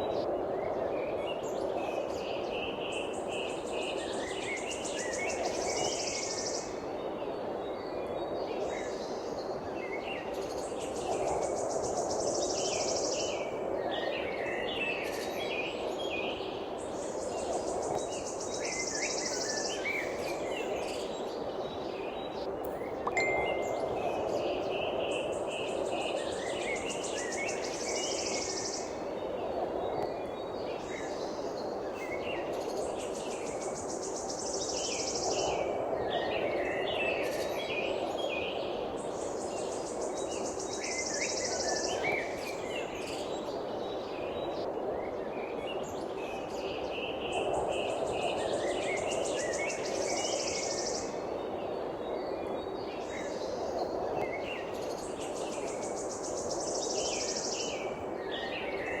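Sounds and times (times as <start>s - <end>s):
songbirds chirping: 1.6s - 44.8s.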